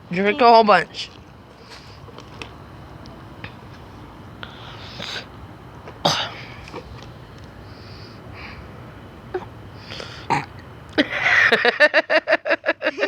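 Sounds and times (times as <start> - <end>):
breathy burp: 10.3 - 10.5.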